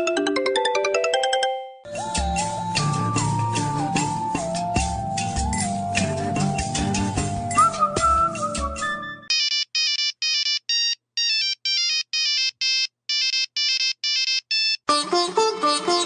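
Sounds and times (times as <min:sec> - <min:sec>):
ringtone tune: 0:00.0 - 0:14.8
mobile phone ringtone beeps: 0:09.3 - 0:14.8.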